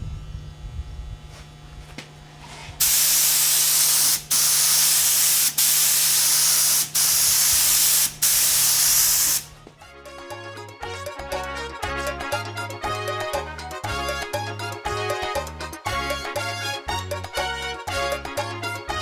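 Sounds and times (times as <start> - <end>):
spray of finish: 2.8 - 9.6
music: 9.4 - 19.0.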